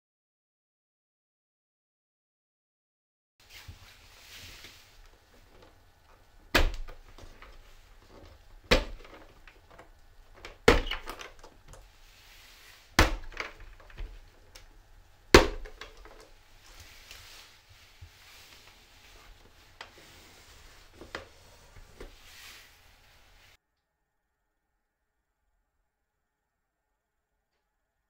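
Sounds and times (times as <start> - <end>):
rustling handling noise: 3.4 - 23.6
sharp knocks of hard objects: 13.0 - 14.1, 15.4 - 16.2.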